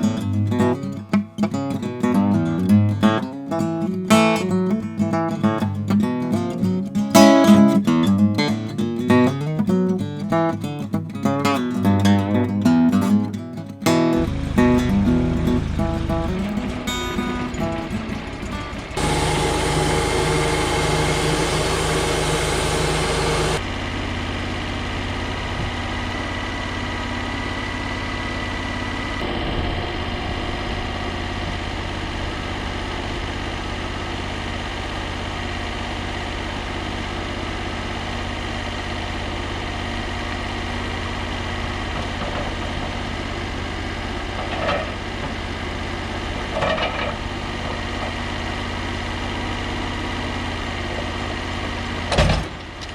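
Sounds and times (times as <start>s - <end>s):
sawmill engine running: 14.1s - 52.9s.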